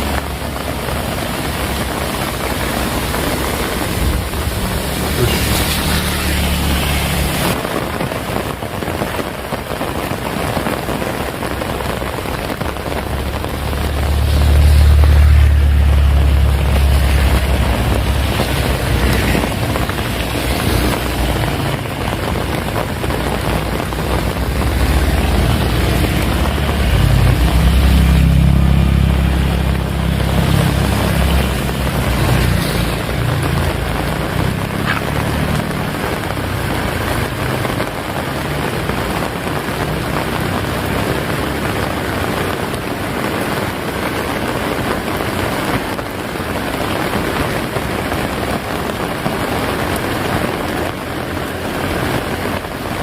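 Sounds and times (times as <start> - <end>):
heavy rain falling: 0.0 - 53.0
deep rumbles: 11.6 - 40.4.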